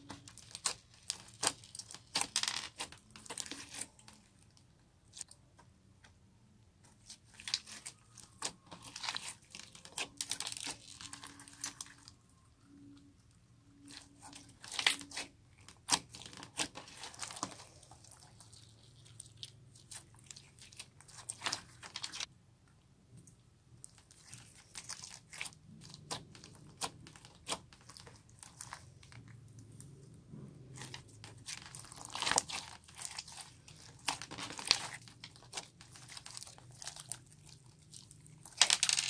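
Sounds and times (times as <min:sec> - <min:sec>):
slime squished by hand: 0:30.7 - 0:38.6.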